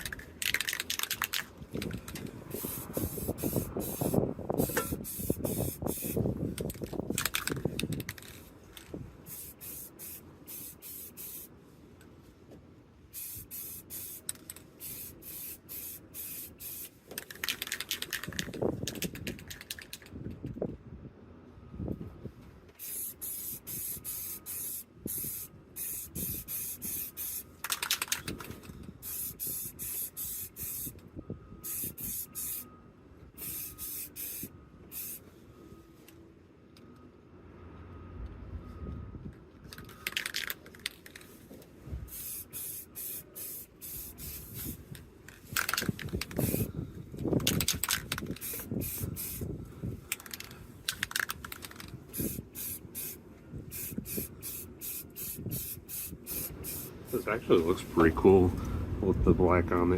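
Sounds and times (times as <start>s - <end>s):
spray paint can hissing: 0.0s - 8.5s, 9.3s - 11.5s, 13.2s - 20.1s, 22.8s - 28.3s, 29.0s - 31.0s, 31.6s - 32.6s, 33.4s - 35.2s, 42.1s - 44.8s, 45.5s - 46.7s, 47.4s - 49.5s, 50.1s - 57.3s.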